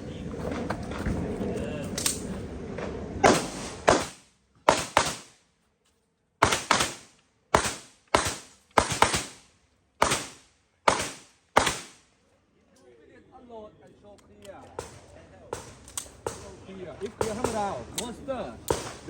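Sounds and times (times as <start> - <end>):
handgun shots: 6.4 - 9.4, 10.0 - 12.0, 18.7 - 19.0.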